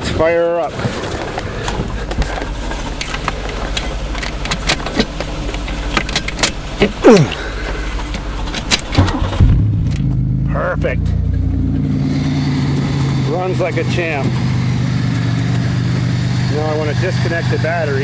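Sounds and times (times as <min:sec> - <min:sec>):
car engine running: 0:00.0 - 0:18.0
car starter cranking: 0:01.2 - 0:11.9.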